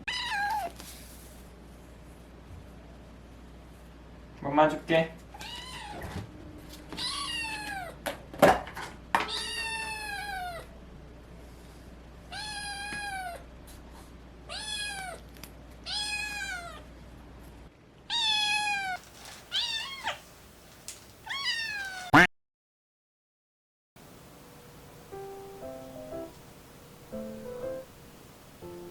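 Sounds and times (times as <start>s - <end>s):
cat meowing: 0.0s - 0.7s, 5.4s - 6.1s, 6.9s - 8.0s, 9.3s - 10.7s, 12.3s - 13.4s, 14.5s - 15.2s, 15.8s - 16.8s, 18.1s - 20.2s, 21.2s - 22.3s.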